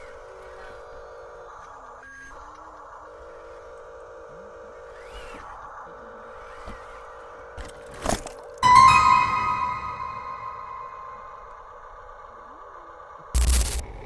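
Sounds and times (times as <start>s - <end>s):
toy electric motors whining: 4.7s - 8.1s.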